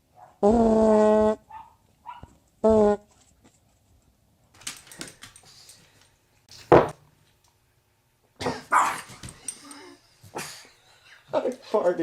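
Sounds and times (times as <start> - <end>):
dog barking: 1.5 - 2.4, 8.7 - 9.1.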